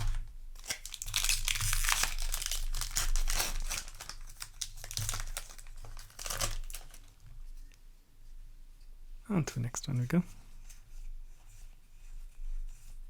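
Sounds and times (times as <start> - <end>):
foil wrapper crinkling: 0.0 - 7.6.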